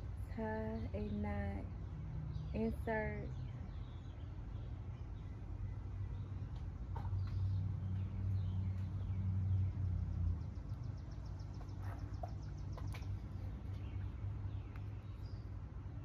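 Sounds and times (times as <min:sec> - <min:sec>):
low steady hum: 0:00.0 - 0:16.0
faint bird chirps: 0:00.8 - 0:15.6
bird trill: 0:10.4 - 0:15.4.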